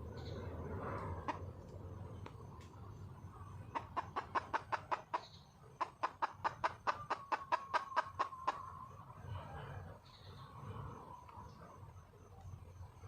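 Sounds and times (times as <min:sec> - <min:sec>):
hen clucking: 0:03.7 - 0:08.8.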